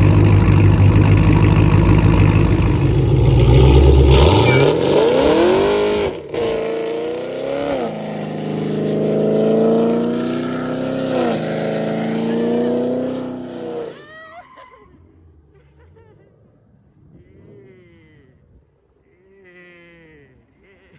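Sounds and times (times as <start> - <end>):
car engine accelerating hard: 0.0 - 14.0.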